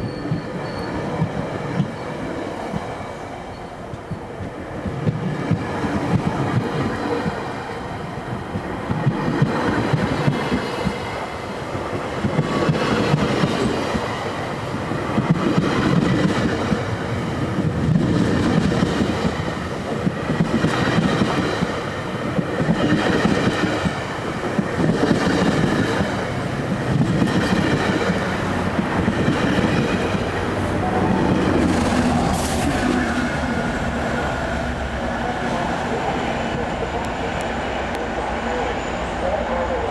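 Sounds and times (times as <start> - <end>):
train wheels rumbling and clicking: 0.0 - 38.2.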